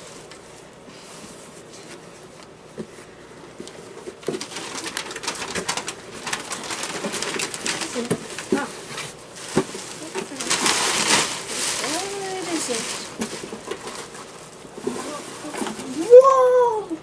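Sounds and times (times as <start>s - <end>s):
wrapping paper crinkling and tearing: 4.1s - 16.9s
low coo-like sounds: 15.9s - 17.0s.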